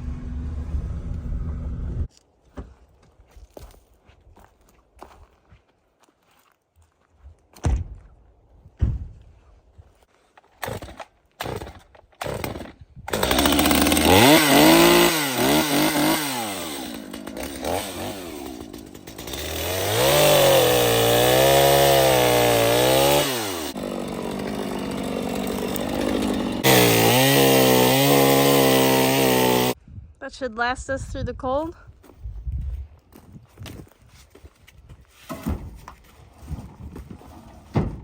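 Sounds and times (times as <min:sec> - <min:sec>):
chainsaw revving: 0:10.6 - 0:29.8.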